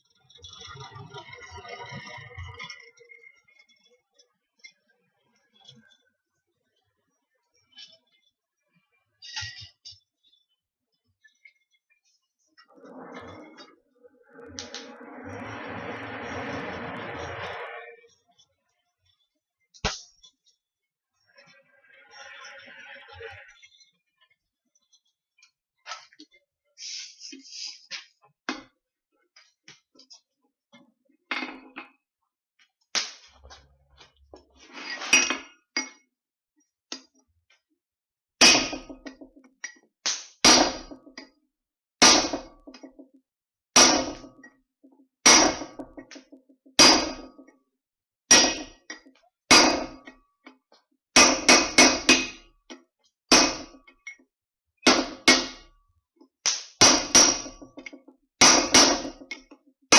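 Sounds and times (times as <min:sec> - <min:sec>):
hammer striking steel on anvil: 0:38.4 - 0:39.0, 0:40.5 - 0:40.9, 0:42.0 - 0:42.6, 0:43.8 - 0:44.3, 0:45.3 - 0:45.9, 0:46.8 - 0:47.3, 0:48.3 - 0:48.8, 0:49.5 - 0:50.1, 0:51.2 - 0:52.4, 0:53.3 - 0:53.8, 0:54.9 - 0:55.7, 0:56.5 - 0:57.6, 0:58.4 - 0:59.4.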